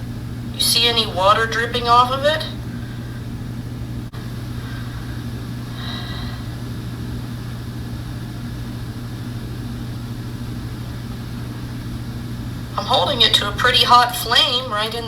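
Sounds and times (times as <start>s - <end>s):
low motor hum: 0.0s - 15.0s.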